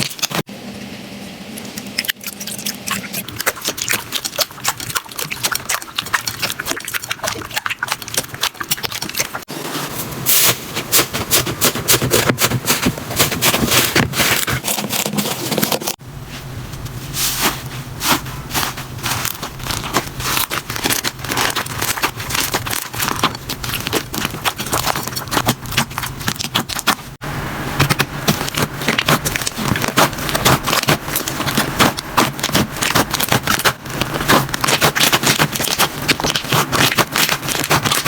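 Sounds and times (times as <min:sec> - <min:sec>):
slime crackling and popping: 0:02.0 - 0:09.5, 0:18.0 - 0:27.1, 0:27.8 - 0:38.0.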